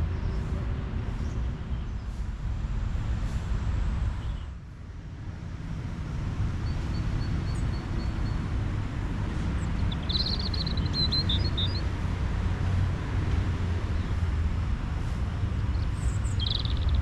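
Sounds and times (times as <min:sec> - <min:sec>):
bird chirping: 0:09.5 - 0:11.9, 0:15.7 - 0:17.0.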